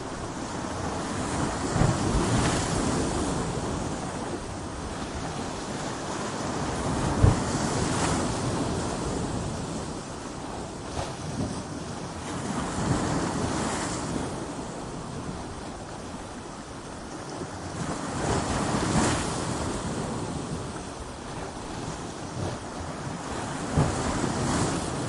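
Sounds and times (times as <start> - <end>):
surf breaking against rocks: 21.3 - 25.0.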